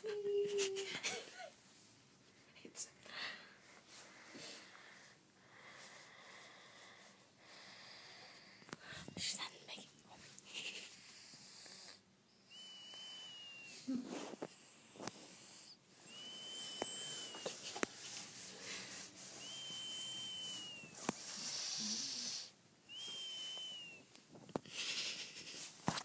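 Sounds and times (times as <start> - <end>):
soft breathy hiss: 0.0 - 26.0
snoring with squeaky whistle: 21.5 - 22.5.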